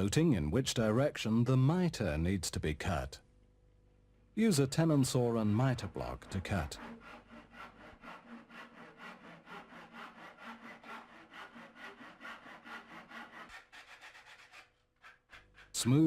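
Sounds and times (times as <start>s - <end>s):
hand saw cutting wood: 4.8s - 15.9s.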